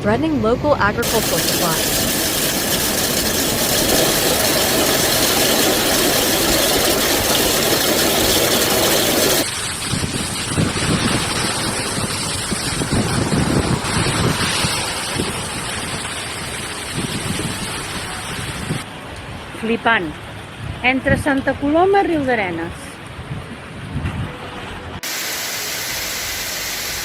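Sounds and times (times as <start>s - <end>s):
wind gusts buffeting microphone: 0.6s - 25.0s
heavy rain downpour hiss: 1.0s - 19.5s, 25.0s - 27.0s.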